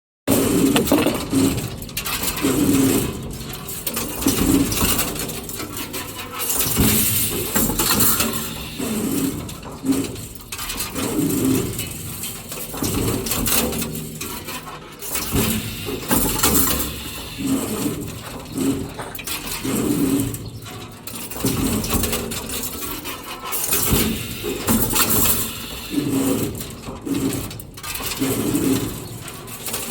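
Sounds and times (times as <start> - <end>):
metal knocks and clanks: 0.7 - 1.7.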